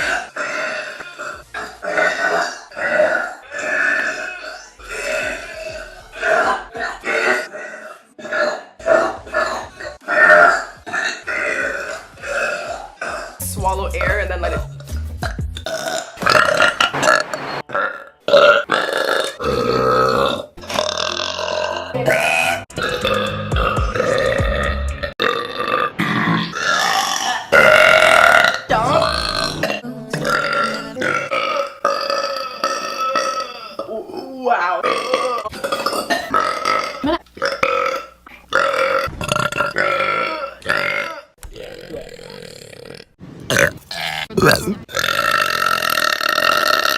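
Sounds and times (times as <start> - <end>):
woman belching: 15.3 - 46.9.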